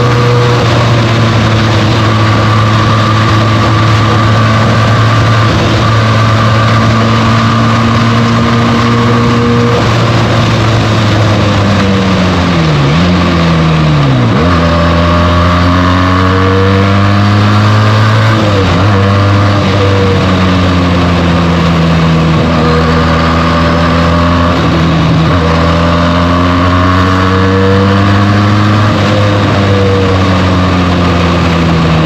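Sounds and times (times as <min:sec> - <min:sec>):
motorcycle engine running: 0:00.0 - 0:32.0.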